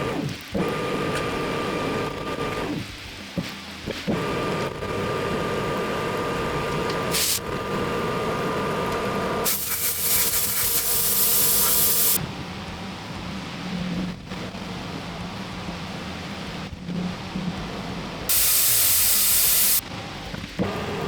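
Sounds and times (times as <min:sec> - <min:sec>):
metal lathe running: 0:04.4 - 0:12.2
hiss: 0:07.0 - 0:07.4, 0:09.4 - 0:12.2, 0:18.3 - 0:19.8.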